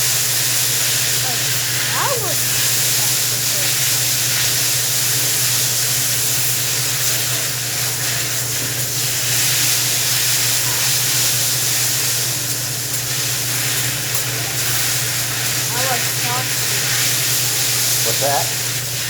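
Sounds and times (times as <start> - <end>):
food sizzling on a griddle: 0.0 - 19.0.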